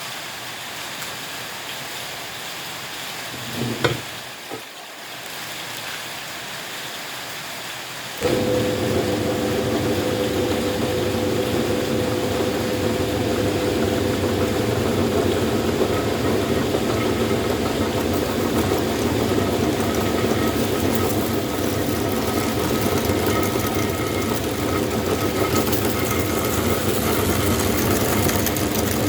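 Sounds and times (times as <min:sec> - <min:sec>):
electric meat grinder humming: 0:08.2 - 0:29.0.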